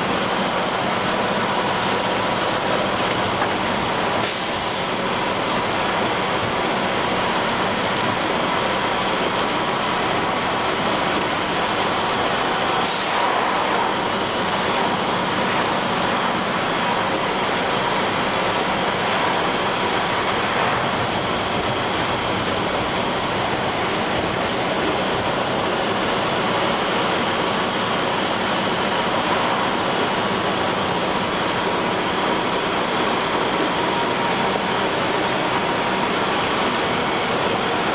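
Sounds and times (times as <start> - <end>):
bus engine and road noise: 0.0 - 37.9
short hiss: 12.8 - 13.5.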